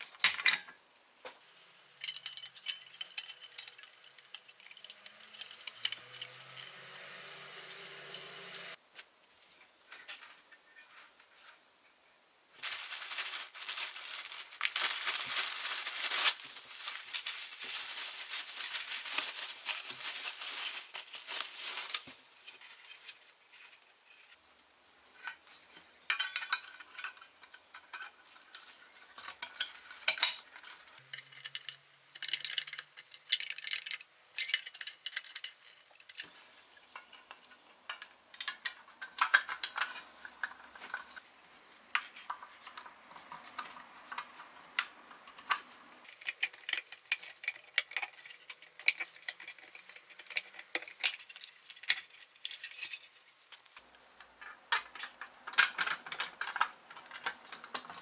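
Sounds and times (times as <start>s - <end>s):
steel parts clinking and scraping: 1.4s - 8.8s, 26.1s - 41.2s, 45.1s - 58.0s.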